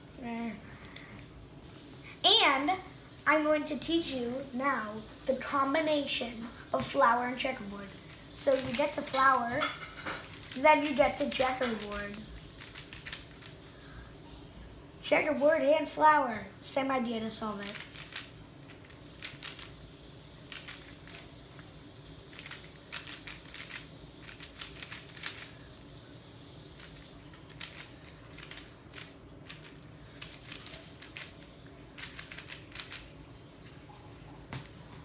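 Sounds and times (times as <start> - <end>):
plastic puzzle cube clicking: 11.4 - 13.5, 17.8 - 19.7, 22.4 - 25.5, 26.8 - 33.1.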